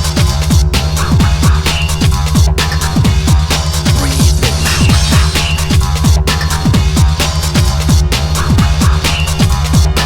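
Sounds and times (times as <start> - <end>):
electronic music with kick drums: 0.0 - 10.0
sustained bass line: 1.0 - 9.0.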